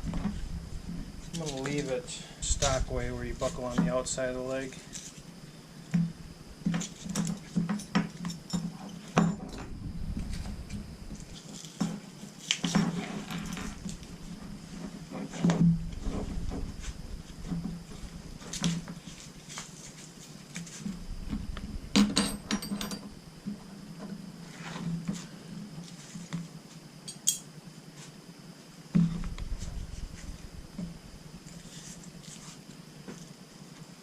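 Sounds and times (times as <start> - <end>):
rustling: 10.0 - 21.9, 29.1 - 33.4
metal buckles clinking: 27.1 - 27.5.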